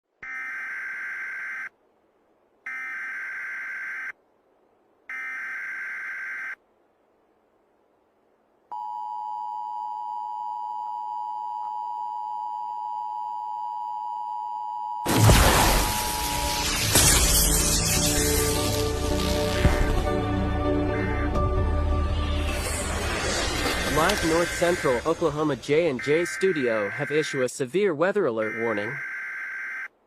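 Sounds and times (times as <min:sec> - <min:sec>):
loud boom with music: 0:15.1 - 0:25.6
digital data bursts: 0:15.1 - 0:27.6.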